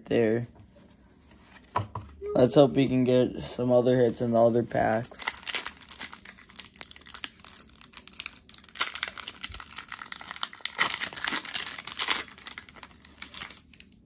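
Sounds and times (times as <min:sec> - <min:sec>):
foil wrapper crinkling: 0:04.7 - 0:14.0.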